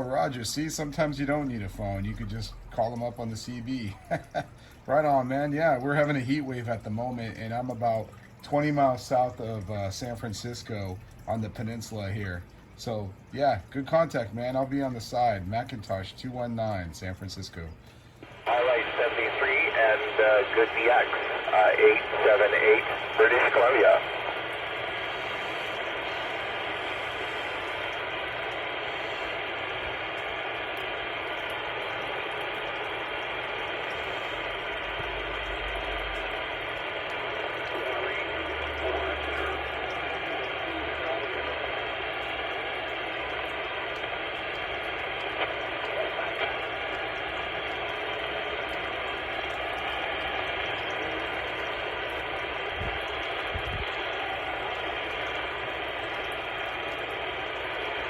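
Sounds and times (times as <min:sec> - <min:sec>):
radio static hiss: 0:18.2 - 0:58.0.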